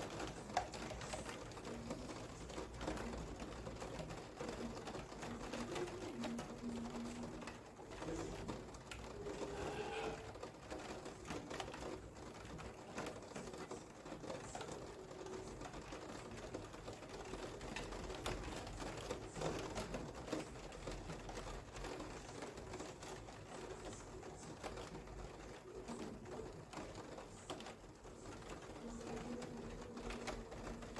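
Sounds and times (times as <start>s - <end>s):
raindrops ticking: 0.0s - 30.9s
steady rain: 0.0s - 30.9s
low cooing call: 9.2s - 10.4s.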